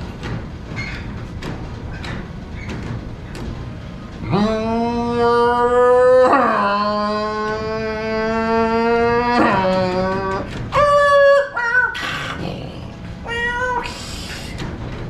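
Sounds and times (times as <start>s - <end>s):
man imitating race car engine: 4.2s - 12.8s
high-pitched vocal squealing: 4.2s - 14.4s.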